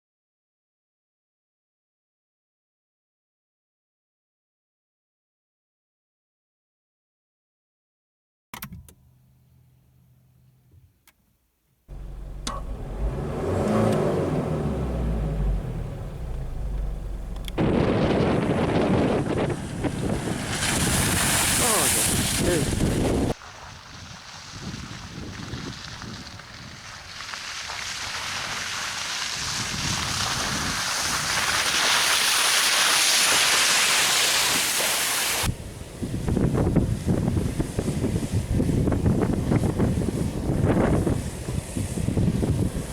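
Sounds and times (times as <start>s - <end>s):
suv engine rumble and driving: 11.9s - 42.9s
sharp clicks: 12.4s - 12.7s, 16.8s - 17.6s.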